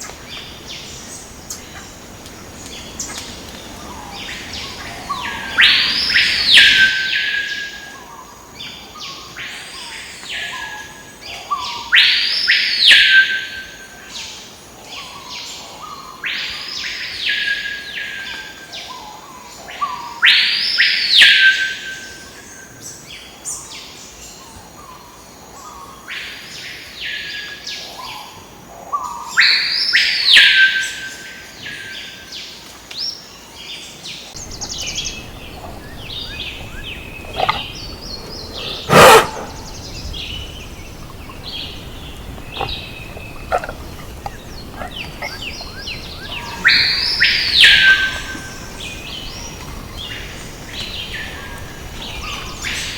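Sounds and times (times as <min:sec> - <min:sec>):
loud sweeping bird call: 0:34.4 - 0:52.9.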